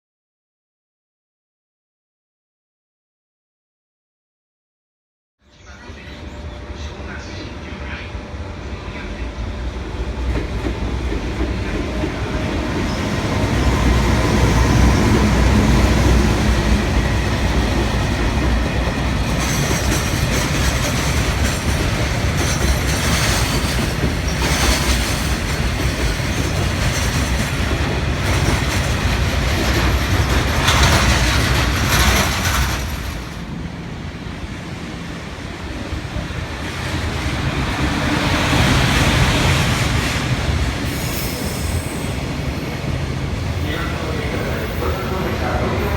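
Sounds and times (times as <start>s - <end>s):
freight train rumbling past: 5.6s - 45.9s
wheels clattering over rail joints: 16.0s - 33.5s.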